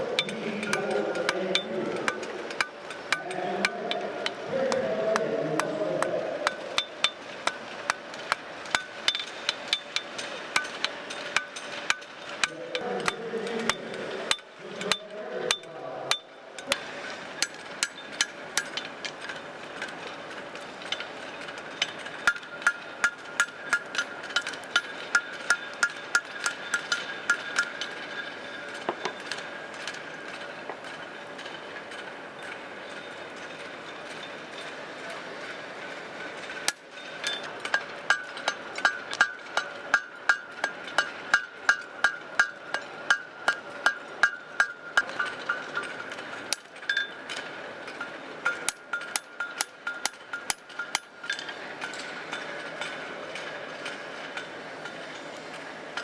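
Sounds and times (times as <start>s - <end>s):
hammer striking steel on anvil: 0.0s - 19.4s, 21.8s - 30.0s, 36.7s - 53.0s.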